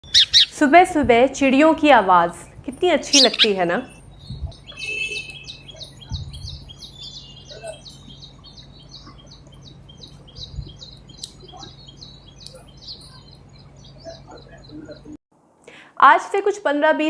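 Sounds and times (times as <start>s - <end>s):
small birds chirping: 0.0s - 15.2s
faint low hum: 0.1s - 16.1s.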